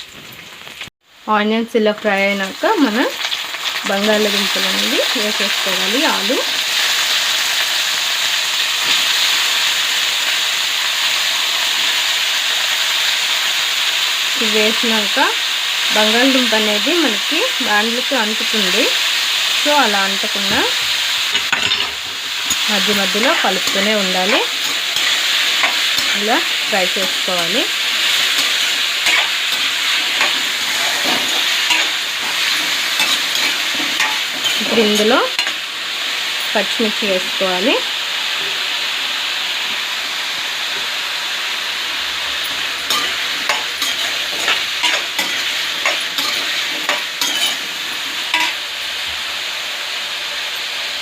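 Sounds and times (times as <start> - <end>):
food sizzling in hot oil: 0.0 - 51.0
spatula scraping pan: 20.5 - 35.6, 42.4 - 48.6.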